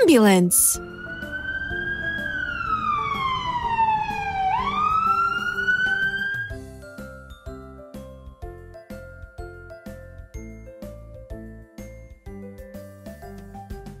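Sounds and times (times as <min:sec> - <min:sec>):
ambulance siren wailing: 0:00.0 - 0:06.6
light background music: 0:00.0 - 0:14.0.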